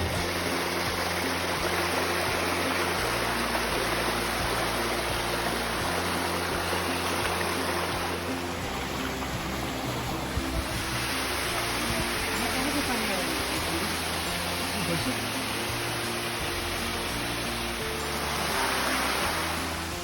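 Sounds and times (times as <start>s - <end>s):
waterfall roaring: 0.0s - 20.0s.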